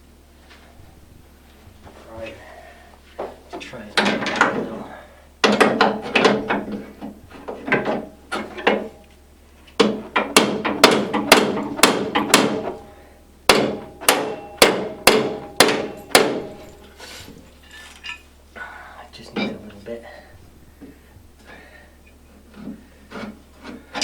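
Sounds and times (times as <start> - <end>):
hammer striking metal: 9.8 - 12.8, 13.5 - 16.8.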